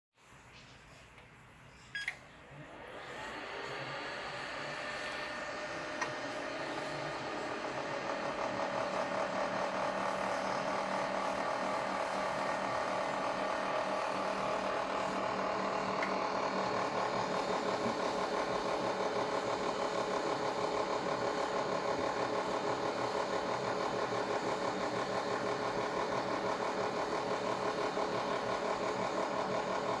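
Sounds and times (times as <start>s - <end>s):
oven motor hum with pulsing vibration: 2.8s - 30.0s.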